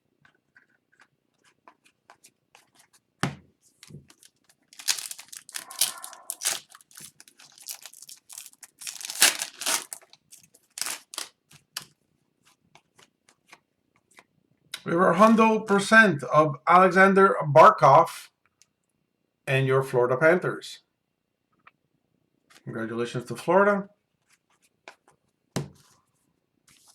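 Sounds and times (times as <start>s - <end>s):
wrapper tearing and crinkling: 4.1s - 11.4s.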